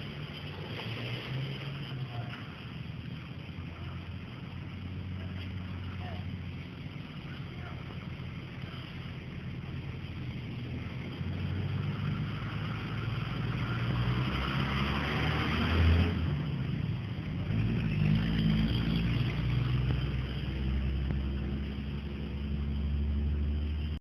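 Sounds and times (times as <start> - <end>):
road noise: 0.0 - 24.0
vehicle engine rumble: 0.0 - 24.0.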